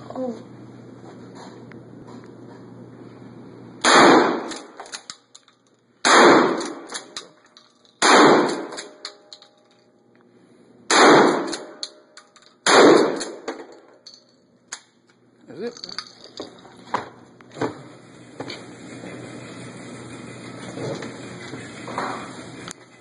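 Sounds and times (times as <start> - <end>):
loud shotgun shots with echo: 3.8 - 4.5, 6.0 - 6.9, 8.0 - 8.7, 10.9 - 11.7, 12.6 - 13.4.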